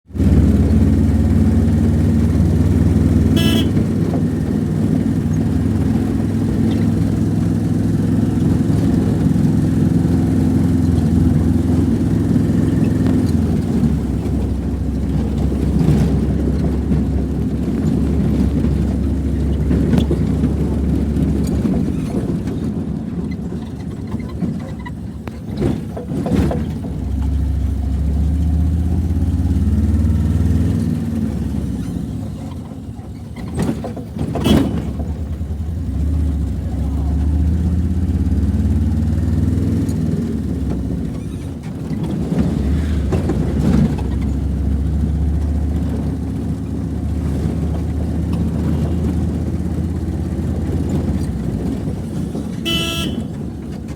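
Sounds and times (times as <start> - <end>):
vehicle engine running: 0.0 - 53.9
horn toot: 3.3 - 4.0, 34.4 - 35.0, 52.6 - 53.4.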